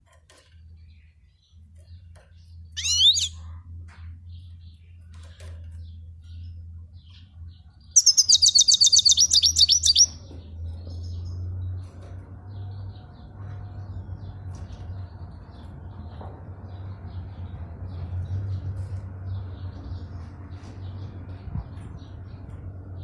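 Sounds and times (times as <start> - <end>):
faint bird chirps: 2.5 - 3.5, 8.0 - 10.3
goldfinch trilling: 2.8 - 3.4, 8.0 - 10.2.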